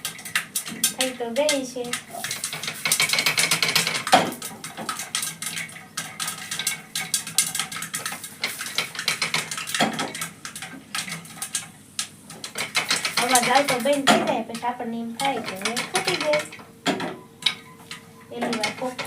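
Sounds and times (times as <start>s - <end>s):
popcorn popping in a pot: 0.0s - 19.0s.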